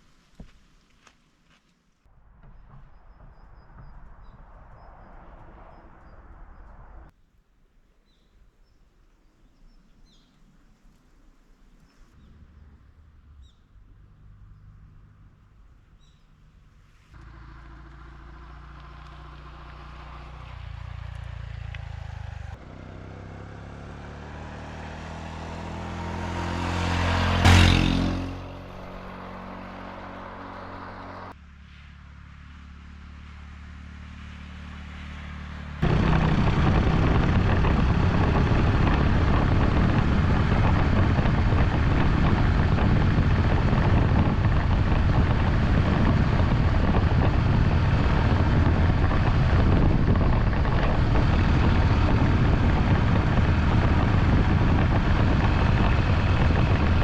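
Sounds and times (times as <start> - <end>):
motorcycle passing by: 11.8 - 57.0
motorcycle engine running: 12.1 - 57.0
wind rush: 35.8 - 57.0.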